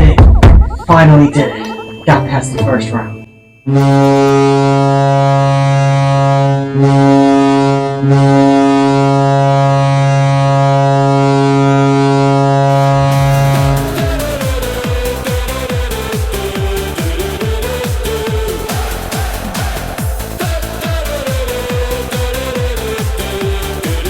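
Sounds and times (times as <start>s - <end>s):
goal horn blasts: 3.3s - 14.7s
song with dance beat: 12.7s - 24.0s.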